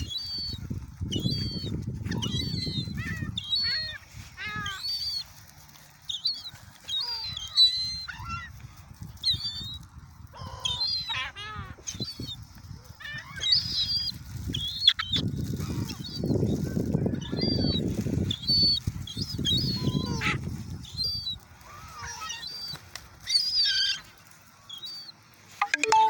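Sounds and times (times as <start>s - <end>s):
gulls calling: 0.0s - 8.7s, 9.3s - 26.0s.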